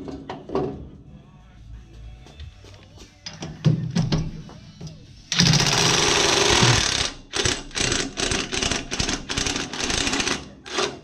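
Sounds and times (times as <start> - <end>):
impact wrench hammering: 5.3 - 11.0.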